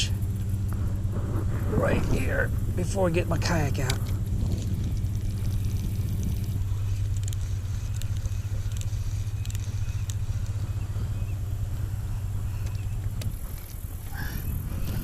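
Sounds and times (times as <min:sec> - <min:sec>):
low engine hum: 0:00.0 - 0:15.0
light clicks: 0:03.8 - 0:10.9, 0:12.5 - 0:15.0.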